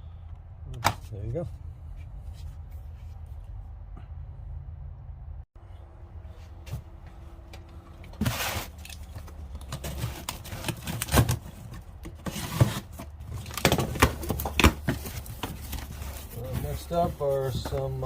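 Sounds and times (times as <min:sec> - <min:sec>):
steady low hum: 0:00.0 - 0:18.0
tools and packaging handled: 0:07.6 - 0:18.0.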